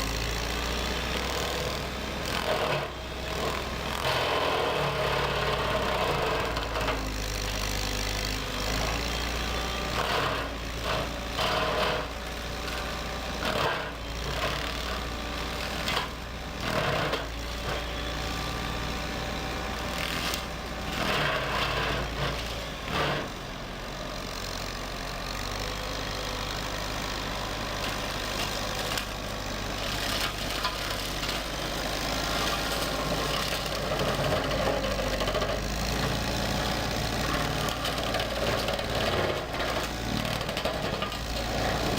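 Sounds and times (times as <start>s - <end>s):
brush cutter engine running: 0.0s - 41.9s
timber cracking and crashing: 27.8s - 36.0s.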